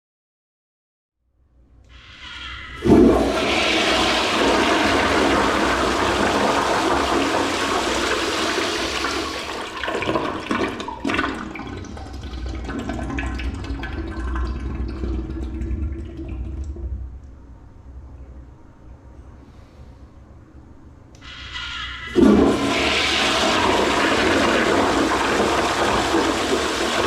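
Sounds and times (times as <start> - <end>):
toilet flushing: 1.9 - 17.3, 21.2 - 27.0.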